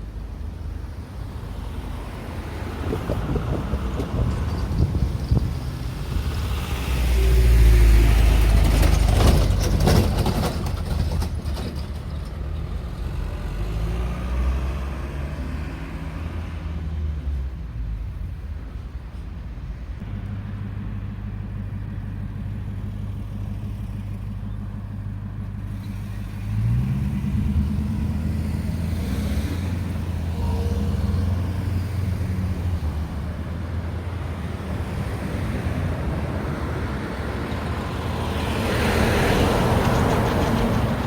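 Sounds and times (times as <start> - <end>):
low drone of traffic engines: 0.0 - 41.0
heavy vehicle passing: 25.7 - 41.0.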